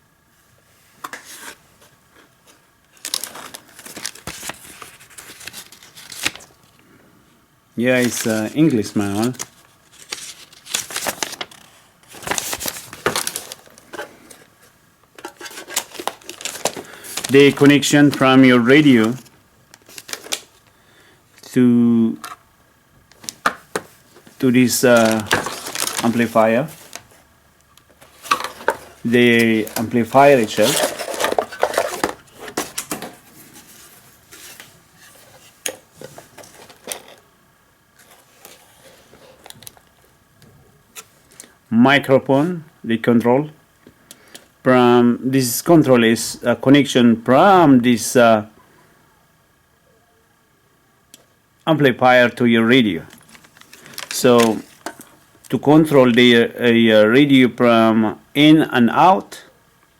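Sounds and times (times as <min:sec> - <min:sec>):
packaging rustling: 0:01.0 - 0:06.8, 0:07.8 - 0:20.8, 0:23.1 - 0:37.3, 0:38.0 - 0:40.1, 0:53.1 - 0:55.6.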